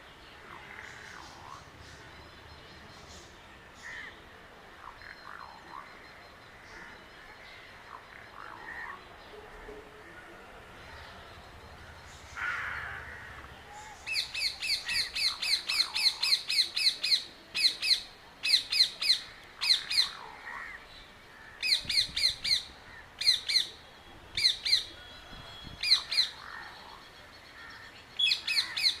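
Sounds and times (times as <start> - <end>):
fainter lower bird calls: 10.7 - 29.0.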